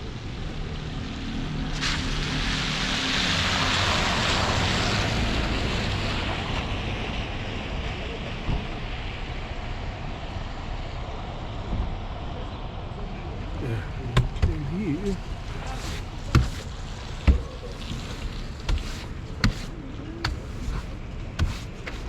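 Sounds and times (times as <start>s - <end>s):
low engine hum: 11.6s - 22.0s.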